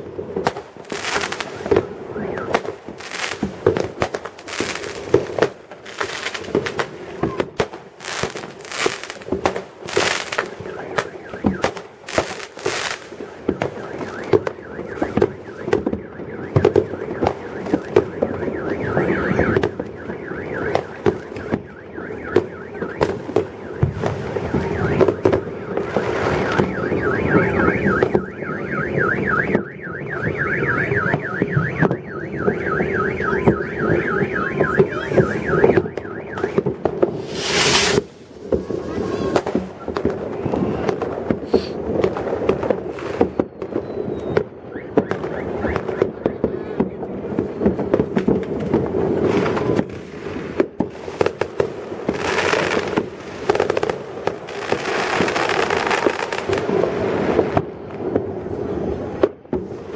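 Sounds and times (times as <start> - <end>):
fireworks bangs and crackle: 0.0 - 59.9
car alarm warbling: 1.2 - 3.6, 10.3 - 36.7, 43.7 - 47.1
loud hissing burst: 37.2 - 39.2.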